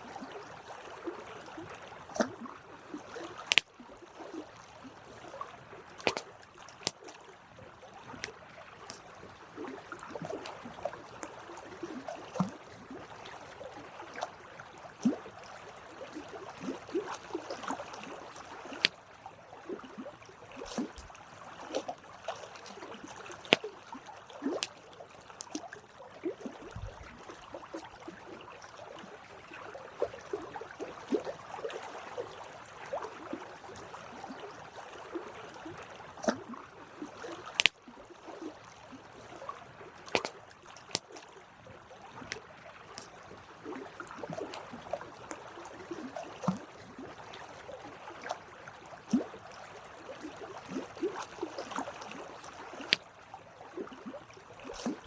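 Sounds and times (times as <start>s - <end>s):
campfire crackling and popping: 3.4s - 3.6s.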